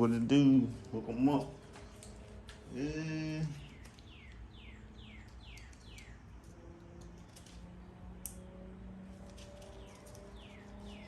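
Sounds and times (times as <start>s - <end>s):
bird chirping: 3.0s - 7.4s, 9.4s - 11.0s.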